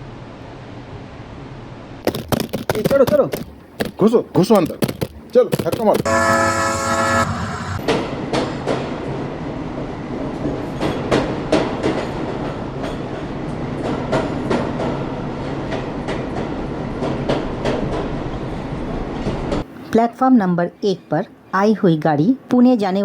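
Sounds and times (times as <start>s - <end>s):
wheels clicking over rail joints: 2.1s - 6.1s
train rumbling on track: 2.8s - 19.7s.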